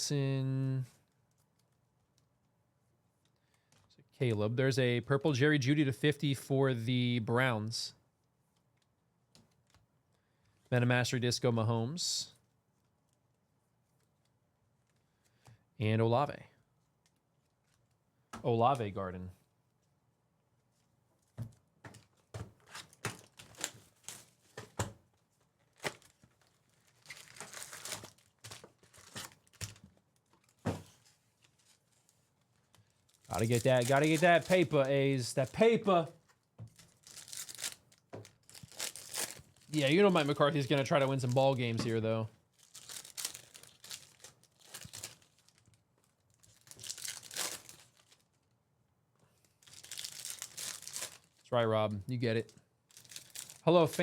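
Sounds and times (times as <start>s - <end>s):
wrappers being torn and crinkled: 22.7s - 24.4s, 25.6s - 30.6s, 31.3s - 35.8s, 36.7s - 41.4s, 42.5s - 48.5s, 49.6s - 51.4s, 52.9s - 54.0s.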